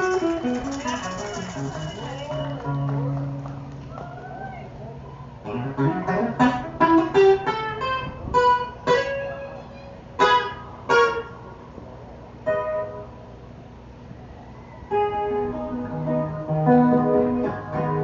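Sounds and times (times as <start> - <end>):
guitar plucked notes: 5.4 - 11.4, 14.9 - 18.0.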